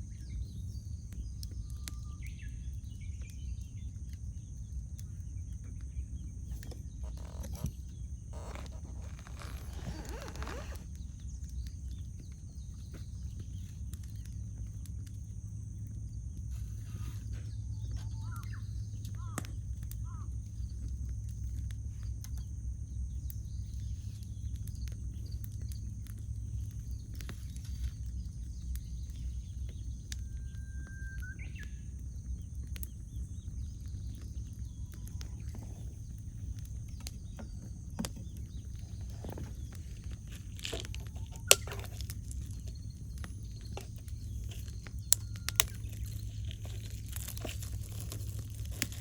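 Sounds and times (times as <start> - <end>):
birds chirping: 0.0 - 49.0
low steady rumble: 0.0 - 49.0
wood fire crackling: 0.0 - 49.0
bird whistle: 30.1 - 31.9.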